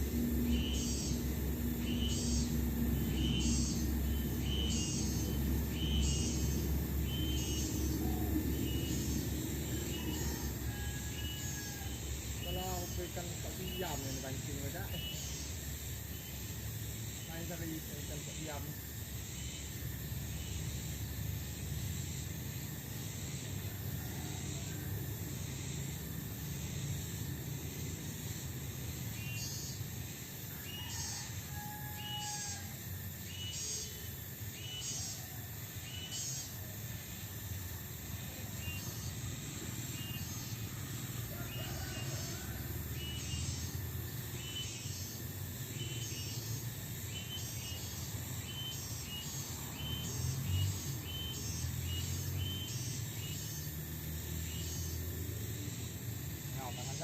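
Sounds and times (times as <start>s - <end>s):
low outdoor rumble: 0.0s - 11.1s.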